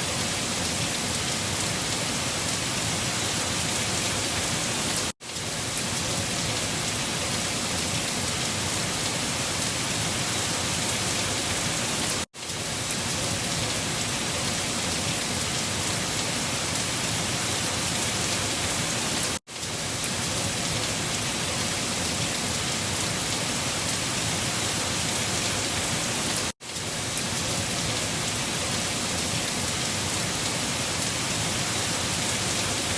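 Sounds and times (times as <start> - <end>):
steady rain falling: 0.0 - 32.9.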